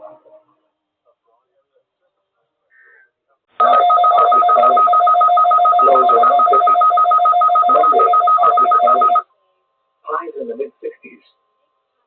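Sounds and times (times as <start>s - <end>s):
two-tone electronic alert signal: 3.6s - 9.2s
muffled garbled radio audio: 7.6s - 9.2s.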